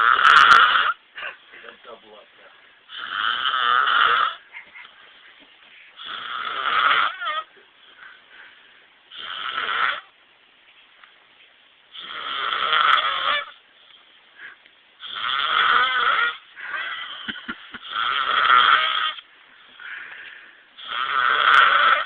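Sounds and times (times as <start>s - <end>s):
man snoring loudly: 0.0s - 1.0s, 2.9s - 4.4s, 6.0s - 7.5s, 9.1s - 10.1s, 12.0s - 13.6s, 15.0s - 19.2s, 20.8s - 22.0s
quiet breathing: 4.5s - 6.2s, 7.5s - 9.1s, 13.7s - 14.9s, 19.2s - 20.8s.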